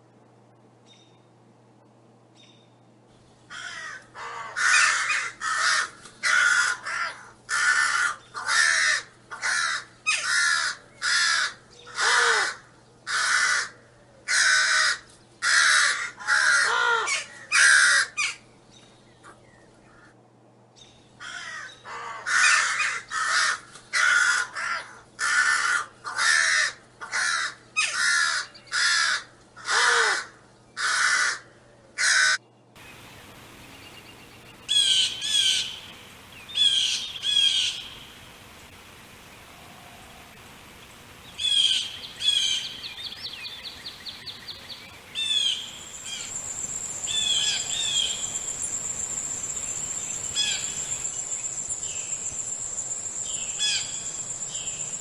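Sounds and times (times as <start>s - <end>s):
bird giving harsh raspy calls: 3.5s - 13.7s, 32.0s - 51.1s.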